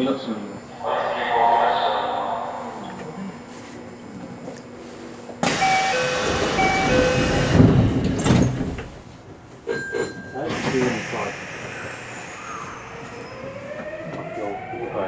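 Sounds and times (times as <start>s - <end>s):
sliding doors thudding shut: 5.4s - 9.1s
air hiss: 10.5s - 14.0s.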